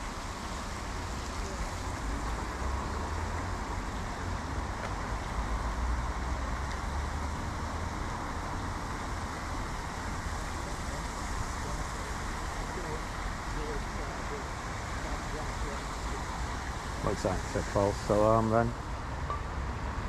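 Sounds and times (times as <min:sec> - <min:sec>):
motor vehicles rumbling: 0:00.0 - 0:20.0
even hiss: 0:08.5 - 0:19.0.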